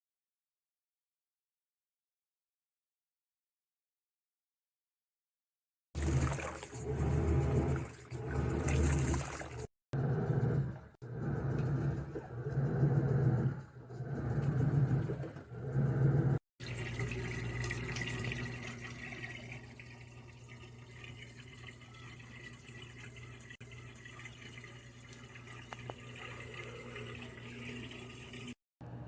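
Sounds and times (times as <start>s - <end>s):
running water: 6.0s - 9.7s, 16.6s - 28.6s.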